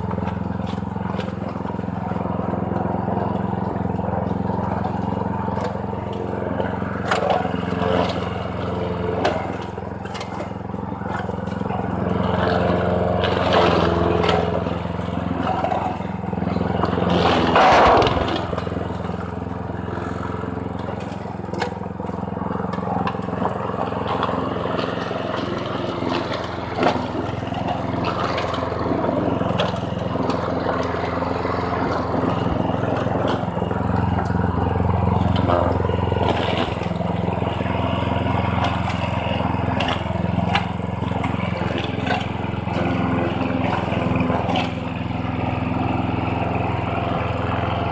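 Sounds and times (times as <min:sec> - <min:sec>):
lawn mower engine running: 0:00.0 - 0:47.9
clatter and scraping: 0:15.4 - 0:21.8.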